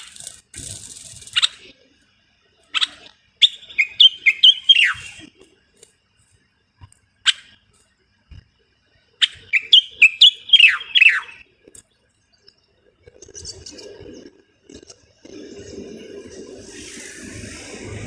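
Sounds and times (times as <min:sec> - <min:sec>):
bulbul whistled song: 0:02.8 - 0:05.3, 0:09.2 - 0:11.4
faint scratchy noise: 0:11.6 - 0:18.0.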